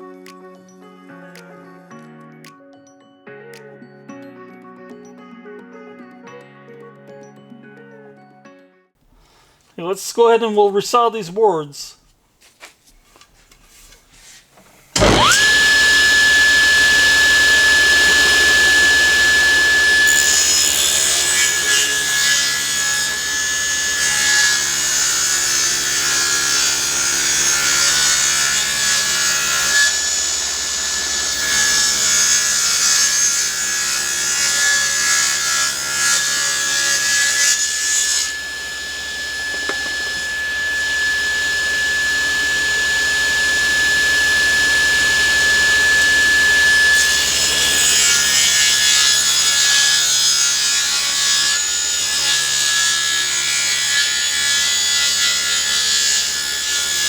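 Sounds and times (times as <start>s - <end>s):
saw blade cutting wood: 15.0s - 57.0s
table saw motor whine: 15.0s - 57.0s.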